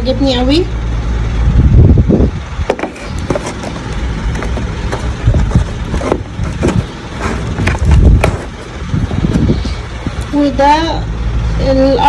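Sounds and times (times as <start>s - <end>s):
plastic curlers clicking: 2.7s - 10.4s.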